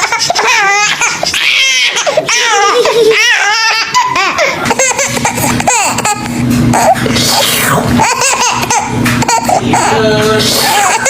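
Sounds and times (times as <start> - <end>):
baby giggling: 0.0 - 11.0
adult speaking playfully: 9.5 - 11.0.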